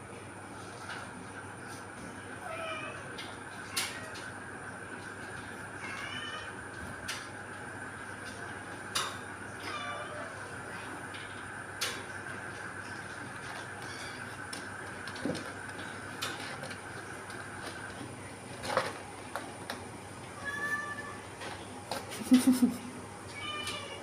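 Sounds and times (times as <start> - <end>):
steady background hum: 0.0 - 24.0
cat calling: 20.4 - 21.3.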